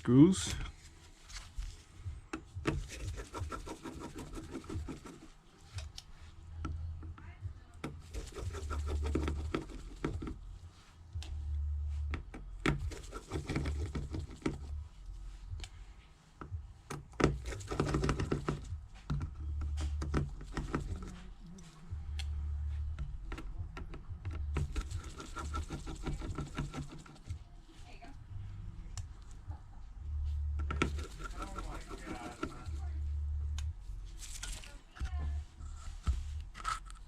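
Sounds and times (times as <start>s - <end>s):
low hum: 8.5s - 13.1s, 18.7s - 26.3s, 28.1s - 37.0s.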